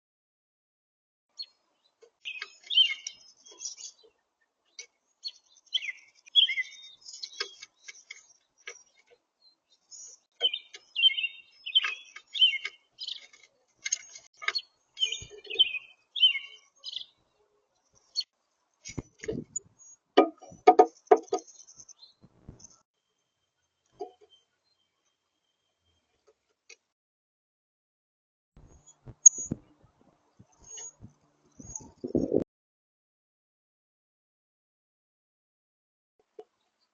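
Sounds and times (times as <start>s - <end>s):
small songbirds chirping: 1.3s - 22.8s, 28.7s - 32.2s.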